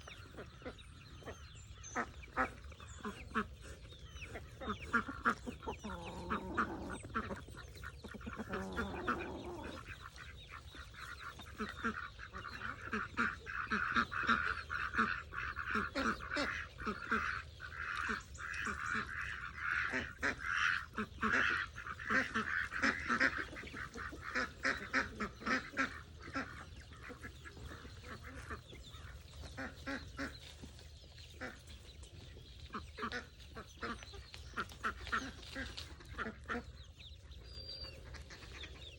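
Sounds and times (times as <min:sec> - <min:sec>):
birds calling and chattering: 0:00.0 - 0:38.9
low bird calls: 0:00.0 - 0:38.9.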